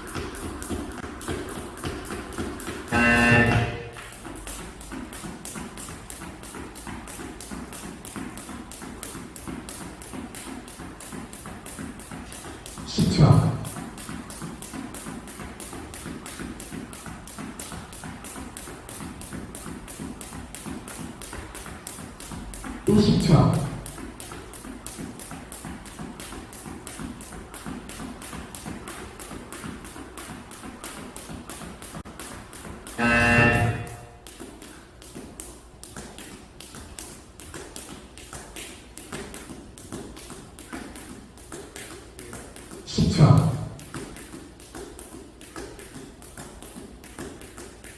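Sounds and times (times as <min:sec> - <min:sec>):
feet landing thuds: 0:00.0 - 0:34.2
jump rope slapping the floor: 0:00.0 - 0:47.9.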